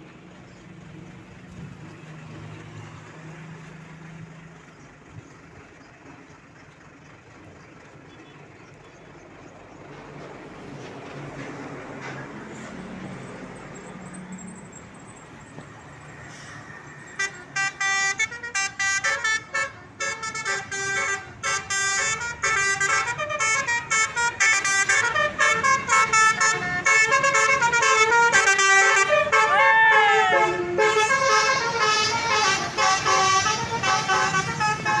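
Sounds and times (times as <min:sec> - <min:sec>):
bus multi-tone horn tune: 0:16.8 - 0:35.0.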